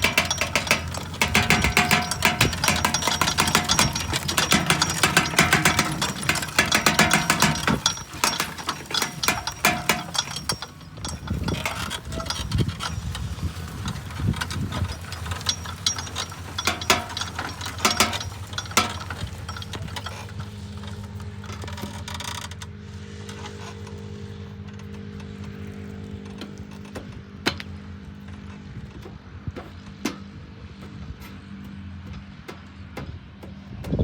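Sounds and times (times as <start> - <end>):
seed drill metal clattering: 0.0 - 22.5.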